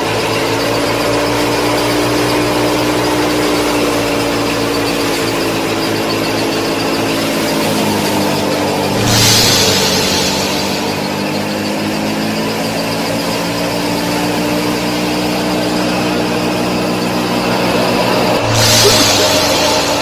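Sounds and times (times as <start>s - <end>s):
small electric motors whining: 0.0s - 11.4s
brief hissing rush: 8.9s - 11.4s, 18.4s - 20.0s.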